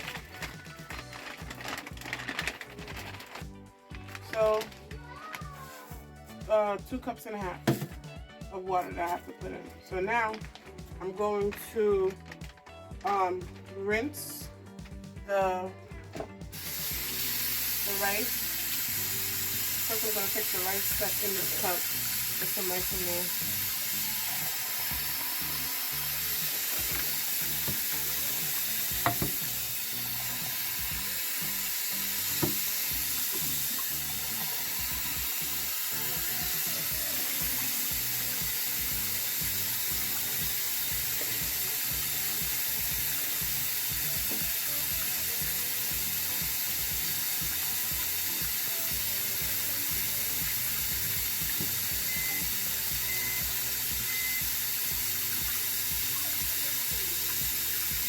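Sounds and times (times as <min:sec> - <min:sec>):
tap running into sink: 0:07.6 - 0:08.2, 0:16.1 - 0:58.0.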